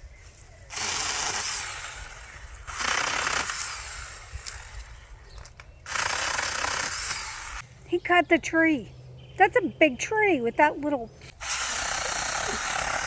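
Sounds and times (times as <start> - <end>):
chainsaw cutting into tree trunk: 0.7 - 4.8, 5.8 - 7.6, 11.4 - 13.0.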